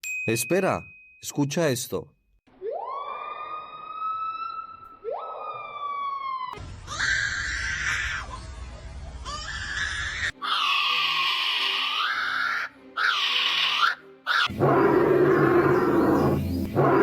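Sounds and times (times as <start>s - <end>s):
bird rising wail: 2.7s - 8.2s, 9.3s - 17.0s
bird screeching calls: 9.3s - 17.0s.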